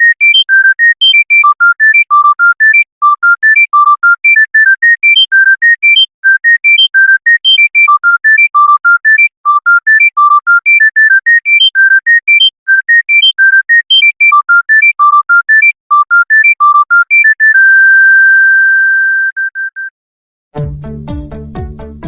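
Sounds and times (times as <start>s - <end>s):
mobile phone ringtone beeps: 0.0s - 19.9s.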